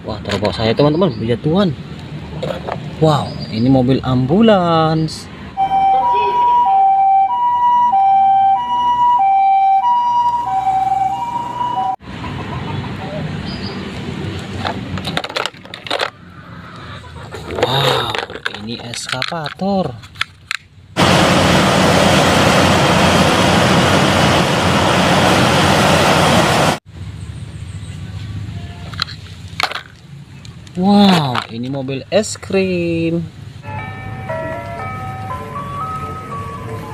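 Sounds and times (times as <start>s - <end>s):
toy siren two-tone hi-lo: 5.6s - 12.0s
steady engine-like hum: 20.7s - 30.8s
heavy engine running loudly: 21.0s - 26.8s.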